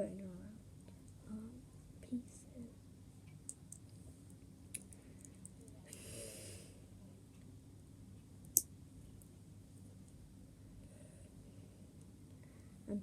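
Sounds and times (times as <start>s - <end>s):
short breathy hiss: 5.9s - 6.8s.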